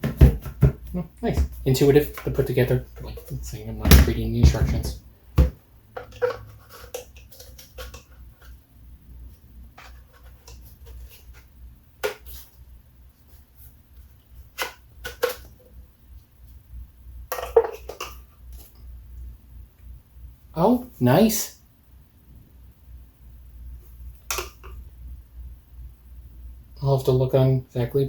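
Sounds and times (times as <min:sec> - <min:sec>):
plastic parts clicking and knocking: 0:14.6 - 0:15.6, 0:17.3 - 0:18.7, 0:24.3 - 0:24.8.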